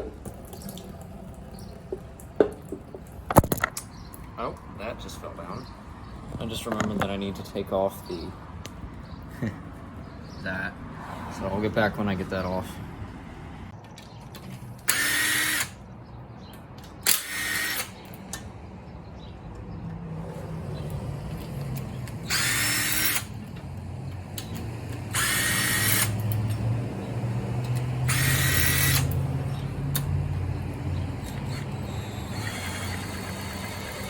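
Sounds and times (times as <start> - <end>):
power tool whining: 14.9 - 15.8, 17.0 - 18.0, 20.4 - 34.0.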